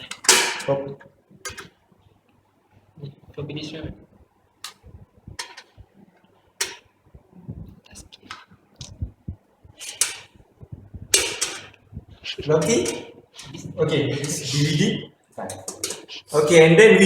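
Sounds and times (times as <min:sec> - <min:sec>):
computer hardware clicks and knocks: 0:00.0 - 0:01.8, 0:05.4 - 0:05.8, 0:06.6 - 0:06.9, 0:11.1 - 0:11.8
hardware rattling: 0:05.3 - 0:05.8, 0:11.0 - 0:11.8.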